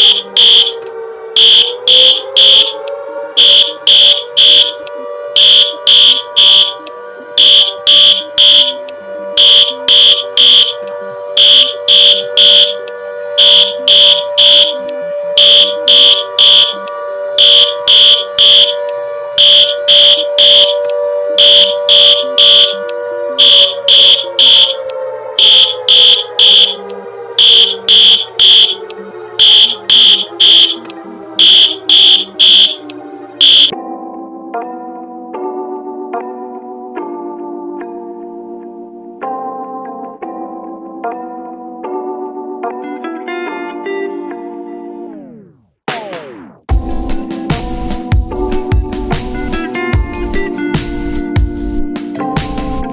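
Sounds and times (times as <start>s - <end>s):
short high alarm beeps: 0.0s - 0.8s, 1.4s - 2.8s, 3.4s - 4.8s, 5.4s - 6.8s, 7.4s - 8.8s, 9.4s - 10.8s, 11.4s - 12.8s, 13.4s - 14.8s, 15.4s - 16.8s, 17.4s - 18.8s, 19.4s - 20.8s, 21.4s - 22.8s, 23.4s - 24.8s, 25.4s - 26.8s, 27.4s - 28.8s, 29.4s - 30.8s, 31.4s - 32.8s, 33.4s - 33.7s
low alarm tone: 0.0s - 33.8s.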